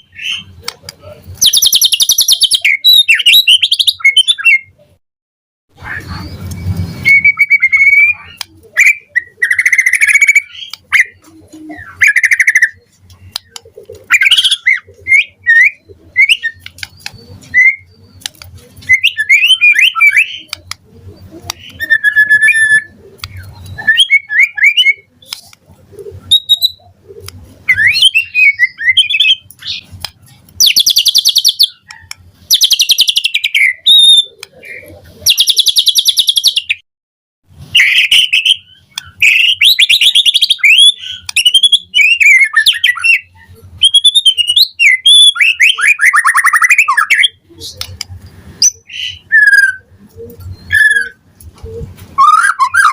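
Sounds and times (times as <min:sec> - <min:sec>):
harsh rapid bird trills: 0:01.3 - 0:04.8, 0:05.8 - 0:36.8, 0:37.8 - 0:51.3
bird singing whistled phrases: 0:01.4 - 0:04.7, 0:05.8 - 0:12.8, 0:14.1 - 0:18.2, 0:18.8 - 0:20.6, 0:21.6 - 0:23.0, 0:23.7 - 0:25.1, 0:26.2 - 0:26.8, 0:27.7 - 0:29.8, 0:30.6 - 0:36.8, 0:37.8 - 0:47.7, 0:48.6 - 0:51.2, 0:52.2 - 0:52.9.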